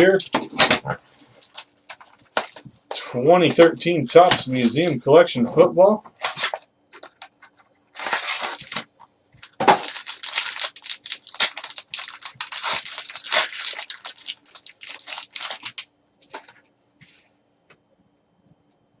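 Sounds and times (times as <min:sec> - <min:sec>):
plastic wrapping crinkling: 0:00.6 - 0:03.8, 0:06.2 - 0:15.9.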